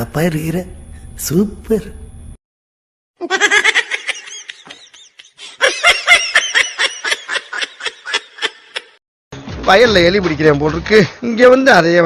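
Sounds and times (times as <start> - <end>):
high-pitched laughter: 3.2 - 9.0.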